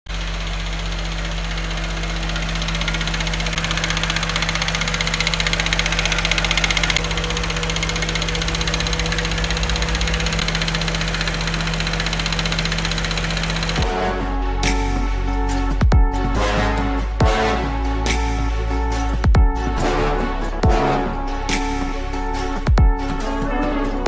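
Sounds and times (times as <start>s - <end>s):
car engine idling: 0.1s - 13.9s.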